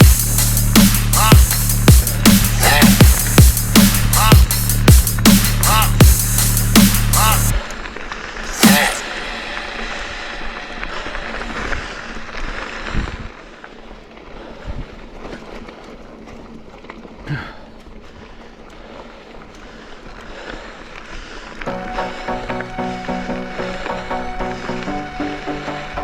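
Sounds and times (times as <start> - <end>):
wind buffeting microphone: 11.4 - 17.1.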